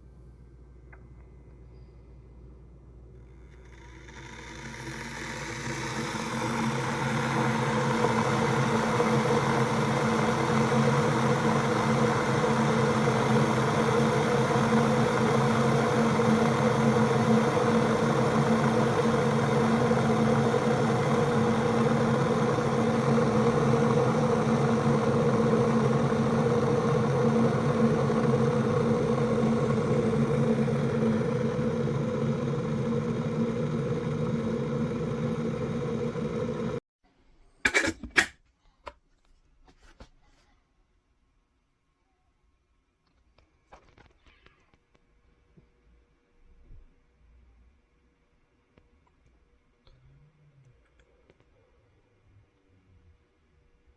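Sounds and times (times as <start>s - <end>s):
kettle water boiling: 3.5s - 36.8s
low hum: 6.2s - 36.8s.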